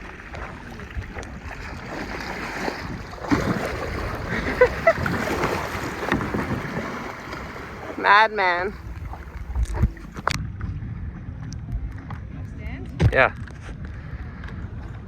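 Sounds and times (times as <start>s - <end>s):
water sloshing and splashing: 0.0s - 10.7s
wind buffeting microphone: 0.0s - 15.0s.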